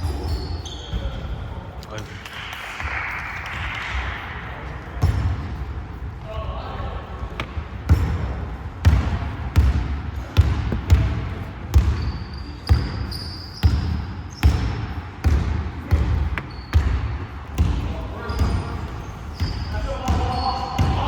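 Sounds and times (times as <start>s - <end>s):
basketball bouncing on a court: 5.0s - 5.6s, 7.3s - 21.0s.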